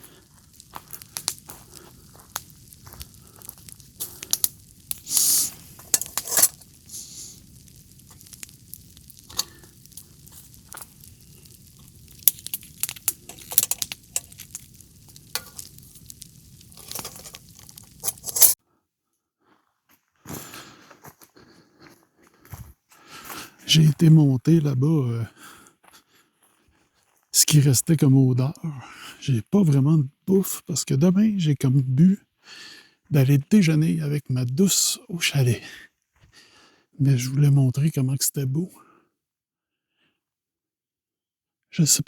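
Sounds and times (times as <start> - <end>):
wood fire crackling: 0.0 - 18.6, 22.2 - 26.0.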